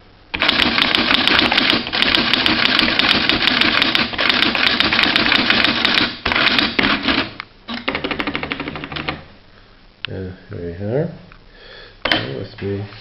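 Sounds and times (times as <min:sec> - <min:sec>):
electronic typewriter clatter: 0:00.3 - 0:09.3.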